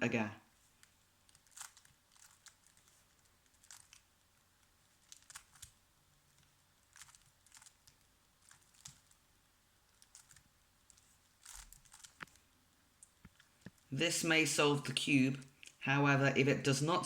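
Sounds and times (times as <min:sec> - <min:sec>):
puzzle cube plastic clicks: 0:00.8 - 0:05.8, 0:06.4 - 0:09.2, 0:09.9 - 0:12.4.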